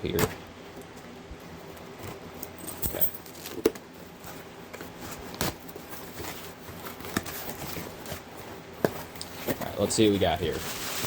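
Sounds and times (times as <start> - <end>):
cardboard box rustling and scraping: 4.2 - 8.3, 8.9 - 11.0.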